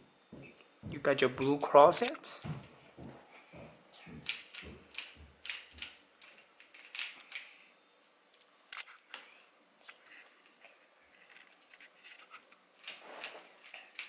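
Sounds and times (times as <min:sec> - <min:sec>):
puzzle cube clicks and clacks: 0:04.2 - 0:07.5.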